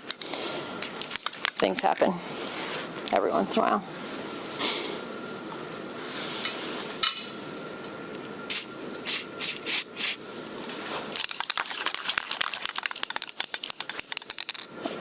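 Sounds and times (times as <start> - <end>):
spray paint hissing: 8.5 - 10.2
spray can ball rattling: 11.1 - 14.7.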